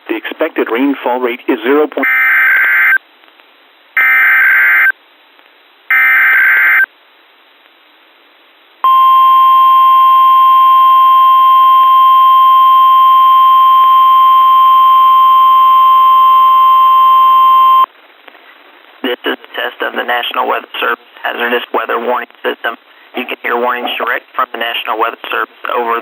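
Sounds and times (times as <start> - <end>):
steady warning alarm tone: 8.8 - 17.9.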